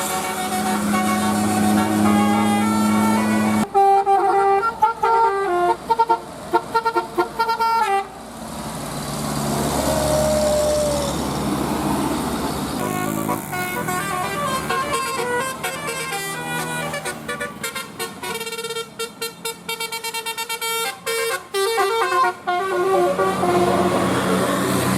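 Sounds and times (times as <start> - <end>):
bus multi-tone horn tune: 0.0 - 8.2, 12.8 - 24.9
passing vehicle rushing: 8.2 - 18.3, 22.6 - 24.9.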